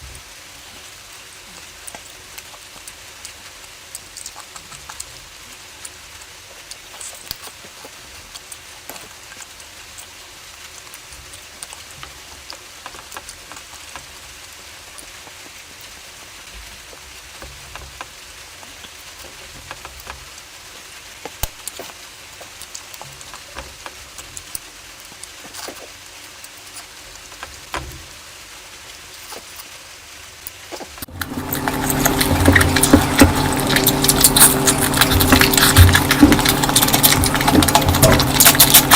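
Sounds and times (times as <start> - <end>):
person chewing with mouth smacks: 1.6 - 10.2, 30.8 - 38.9.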